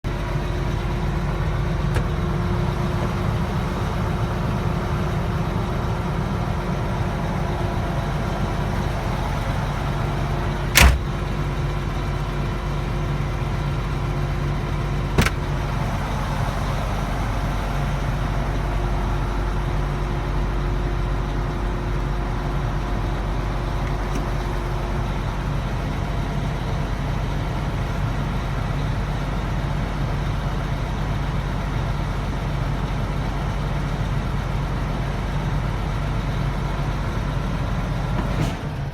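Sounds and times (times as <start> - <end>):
truck diesel engine idling: 0.1 - 38.2
sharp knocks: 10.8 - 11.2.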